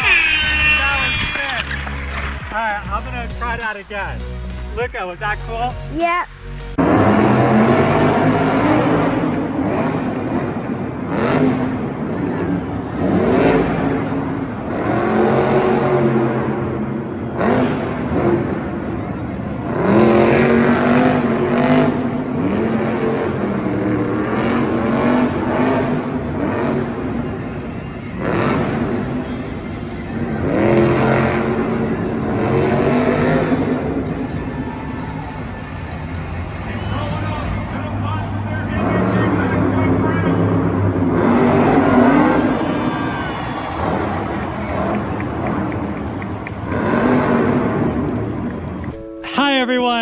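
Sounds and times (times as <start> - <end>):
toy truck motors revving: 0.0 - 2.4.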